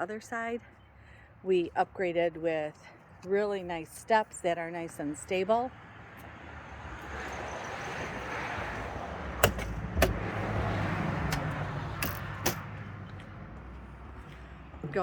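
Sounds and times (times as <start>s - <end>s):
sharp clicks: 9.4s - 13.3s.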